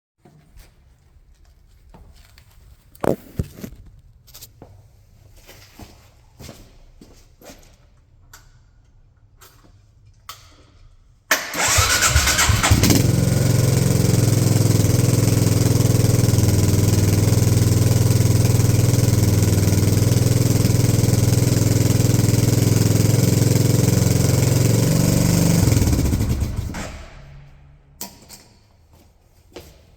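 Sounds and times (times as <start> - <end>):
electric starter whine: 11.3 - 27.5
motorcycle engine idling: 11.6 - 27.2.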